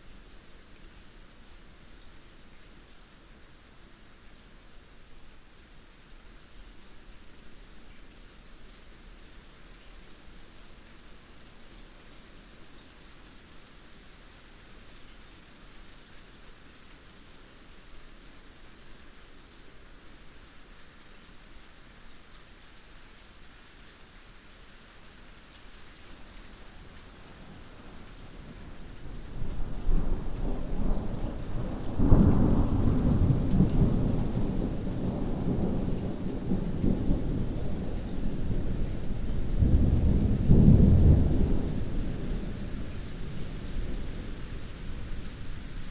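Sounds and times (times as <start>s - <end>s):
steady rain: 0.0s - 45.9s
thunder rumbling: 29.3s - 45.9s.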